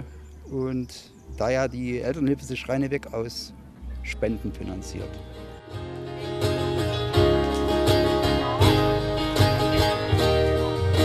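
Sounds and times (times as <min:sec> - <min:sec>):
steady bass line: 0:01.4 - 0:11.0
acoustic guitar strumming: 0:05.1 - 0:11.0.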